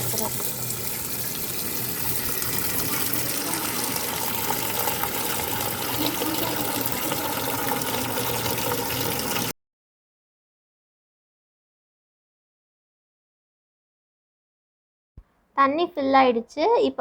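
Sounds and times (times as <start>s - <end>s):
water gushing into washing machine: 0.0s - 9.5s.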